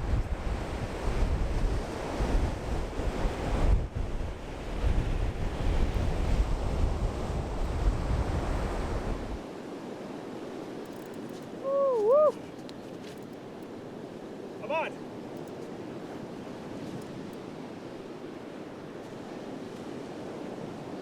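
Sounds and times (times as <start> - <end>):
wind buffeting microphone: 0.0 - 9.5.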